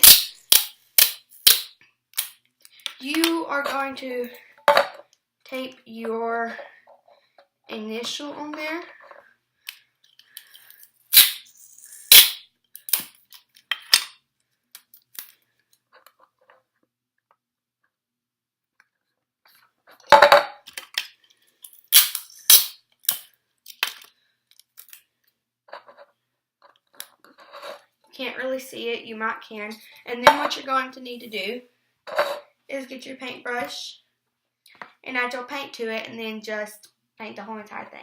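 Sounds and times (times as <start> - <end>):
tape ripping: 0.0 - 2.3, 11.1 - 13.1, 21.9 - 23.2
tape snapping: 12.1 - 13.1.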